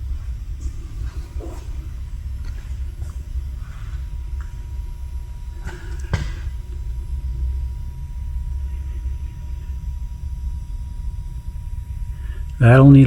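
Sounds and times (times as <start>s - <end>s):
low rumble: 0.0s - 13.0s
sharp knocks: 5.7s - 6.5s.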